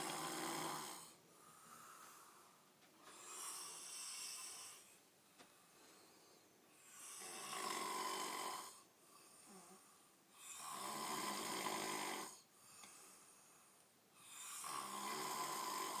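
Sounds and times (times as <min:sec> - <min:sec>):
man snoring: 0:00.0 - 0:01.2, 0:06.9 - 0:08.9, 0:10.4 - 0:12.4, 0:14.2 - 0:16.0
quiet breaths: 0:00.0 - 0:16.0.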